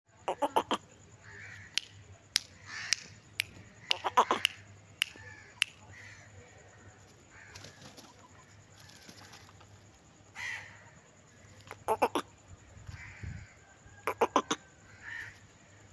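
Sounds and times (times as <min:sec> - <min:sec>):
chickens calling: 0:00.3 - 0:00.9, 0:02.6 - 0:06.4, 0:07.1 - 0:10.7, 0:11.4 - 0:15.9
sharp clicks: 0:01.7 - 0:05.8.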